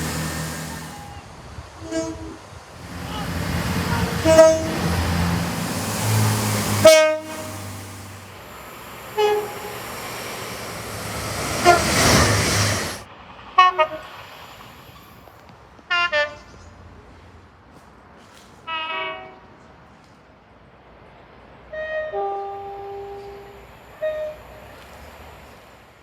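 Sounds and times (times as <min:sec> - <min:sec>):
train horn toots: 0:00.0 - 0:13.0, 0:13.6 - 0:14.2, 0:15.9 - 0:16.6, 0:18.7 - 0:19.7, 0:21.7 - 0:24.7
moving train rumble: 0:00.0 - 0:26.0.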